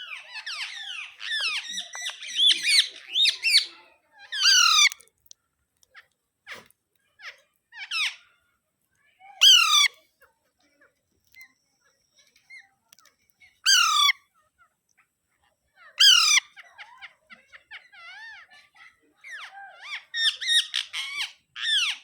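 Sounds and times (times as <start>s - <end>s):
parakeet squawking: 0.0s - 5.0s, 9.4s - 9.9s, 13.7s - 14.2s, 16.0s - 16.6s, 19.3s - 22.0s
soft parakeet chirps: 0.0s - 5.0s, 9.4s - 10.0s, 13.6s - 14.2s, 16.0s - 16.6s.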